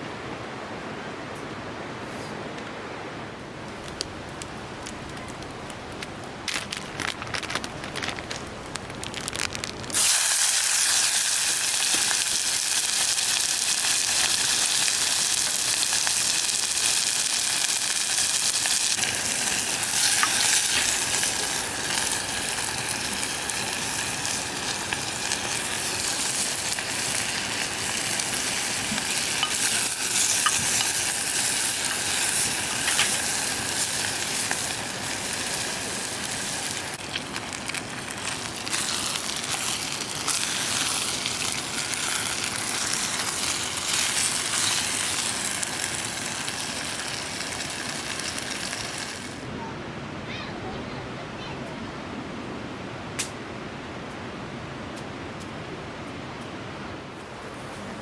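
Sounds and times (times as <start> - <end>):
food sizzling in a pan: 9.9 - 49.4.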